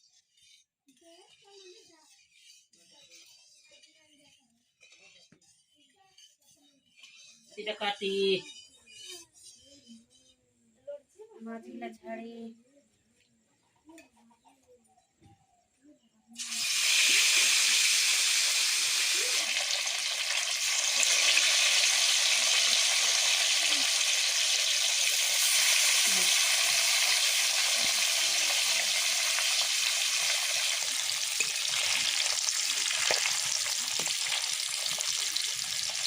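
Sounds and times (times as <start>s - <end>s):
fish sizzling in hot oil: 16.4s - 36.0s.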